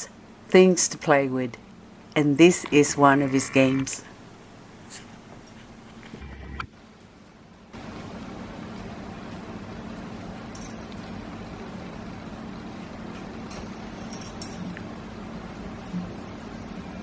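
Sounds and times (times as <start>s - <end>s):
low hum: 6.0s - 17.0s.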